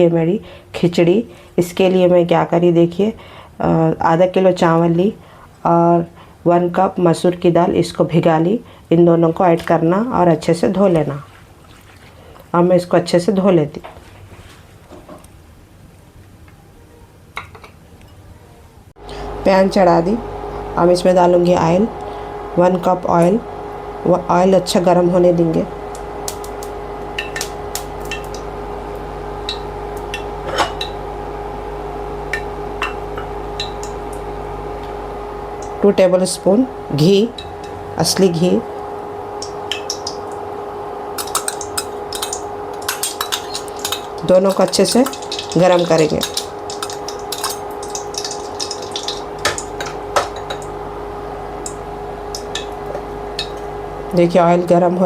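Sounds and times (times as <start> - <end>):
steady background hum: 0.0 - 55.0
metallic clicks and ticks: 41.2 - 50.6
metal utensil clinking on pan: 41.2 - 50.7
oil hissing in a pan: 41.2 - 50.8.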